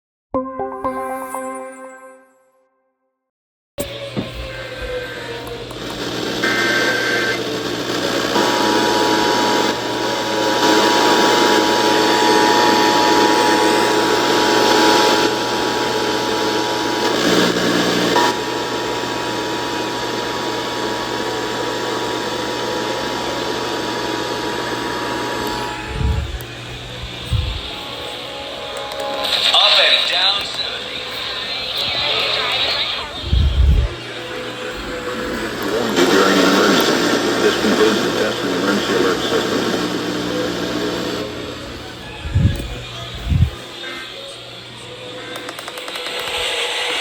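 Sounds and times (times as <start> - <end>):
radio static hiss: 3.9 - 47.0
two-tone alarm signal: 8.1 - 36.1.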